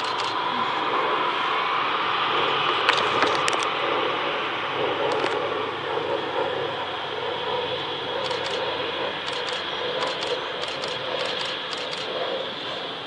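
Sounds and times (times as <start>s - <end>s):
jet engines rushing: 0.0s - 13.0s.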